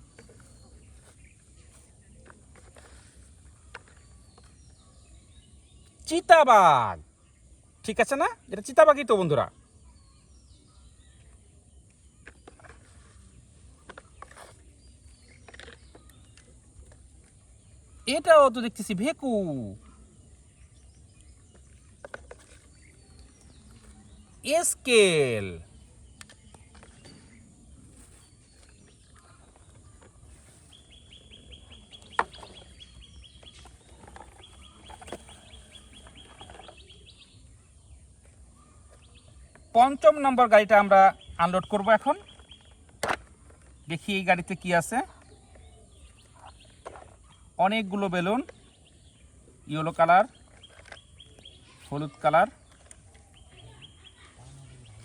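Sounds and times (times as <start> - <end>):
bird trilling: 53.4 - 55.0.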